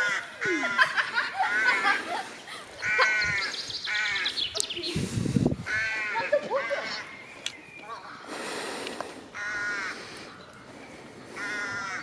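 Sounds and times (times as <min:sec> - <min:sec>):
birds cawing: 0:00.0 - 0:04.9, 0:05.6 - 0:08.6, 0:09.3 - 0:12.0
high bird chirps: 0:03.0 - 0:05.0
wind rumble on microphone: 0:04.5 - 0:06.5.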